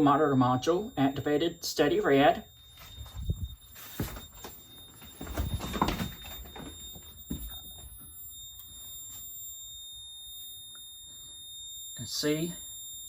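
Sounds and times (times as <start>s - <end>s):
alarm panel high-pitched tone: 0.0s - 13.0s.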